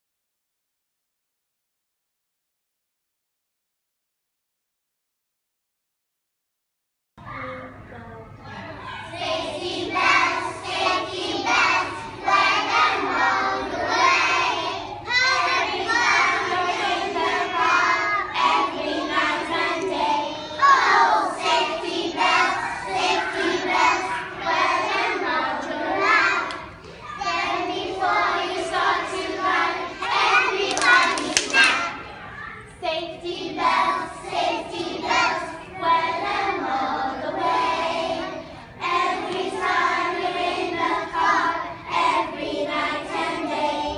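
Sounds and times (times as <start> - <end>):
children singing: 8.9 - 32.5, 33.2 - 43.9
hands clapping: 26.4 - 27.0, 30.1 - 32.0.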